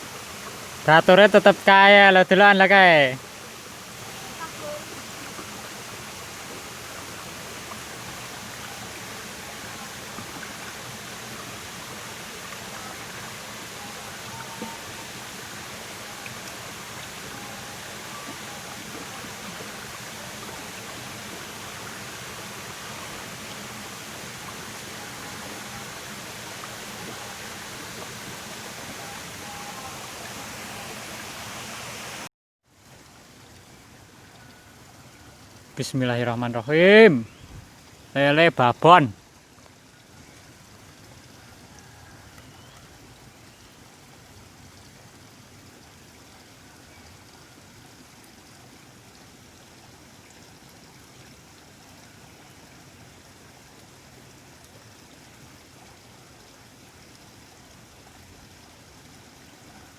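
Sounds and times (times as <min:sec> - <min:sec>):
water rushing: 0:00.0 - 0:59.9.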